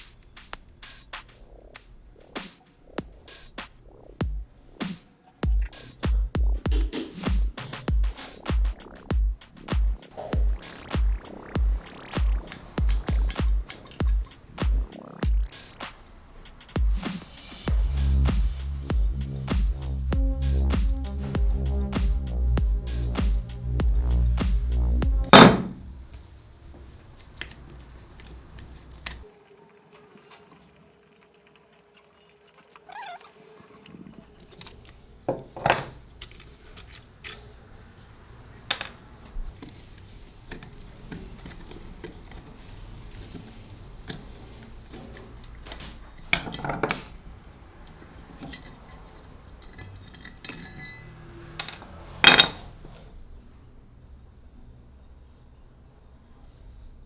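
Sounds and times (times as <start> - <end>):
metal parts clinking: 27.2 - 37.9, 39.6 - 52.6.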